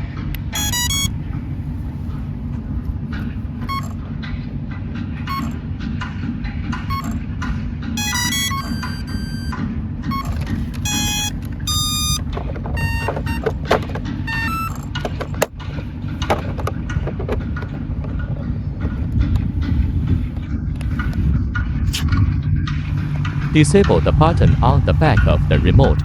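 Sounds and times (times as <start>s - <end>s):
clicks: 0.3s - 1.1s, 5.3s - 5.6s, 8.0s - 18.3s
short electronic beeps: 0.5s - 1.1s, 3.7s - 3.9s, 5.3s - 5.6s, 6.9s - 7.2s, 8.0s - 13.6s, 14.2s - 14.8s
steady low rumble: 10.1s - 26.0s.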